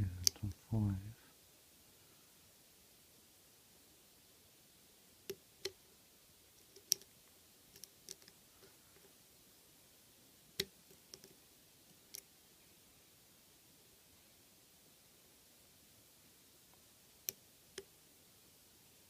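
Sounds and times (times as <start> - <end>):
lock pick metallic clicks: 6.6 - 7.1, 7.7 - 8.4.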